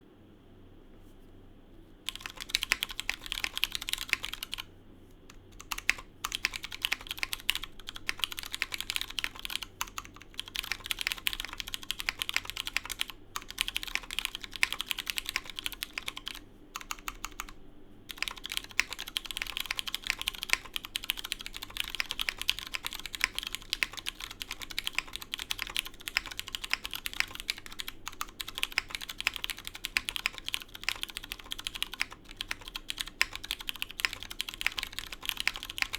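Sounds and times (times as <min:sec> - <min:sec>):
mechanical keyboard typing: 0:02.1 - 0:04.7, 0:05.3 - 0:35.9.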